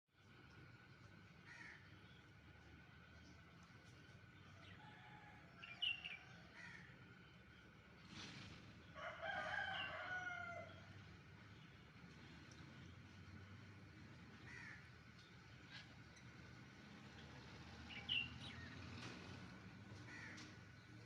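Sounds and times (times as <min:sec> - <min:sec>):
bird calls: 0:17.8 - 0:19.0.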